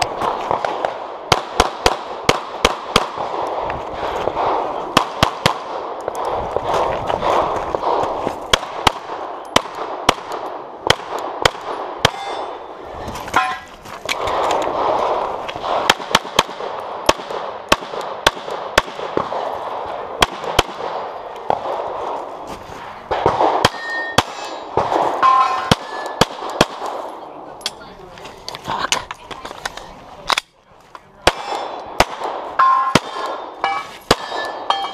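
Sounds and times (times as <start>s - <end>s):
pistol shots: 0.0s - 22.2s, 23.1s - 27.2s, 31.2s - 34.9s
metal targets clanging: 12.0s - 13.9s, 23.7s - 26.2s, 32.6s - 34.9s.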